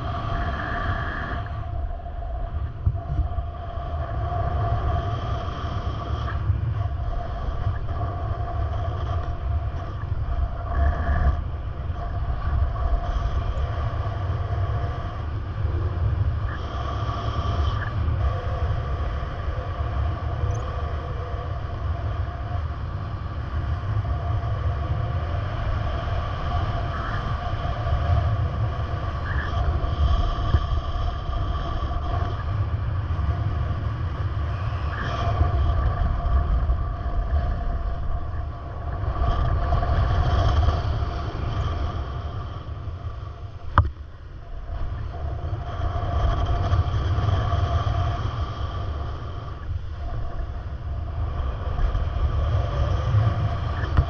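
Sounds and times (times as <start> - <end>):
faint steady whines: 0.0 - 54.0.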